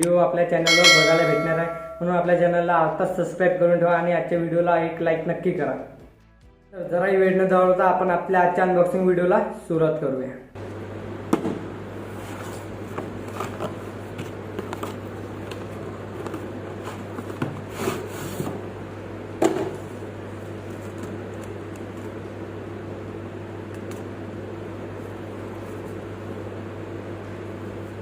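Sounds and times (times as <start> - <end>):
steady low hum: 0.0 - 4.5.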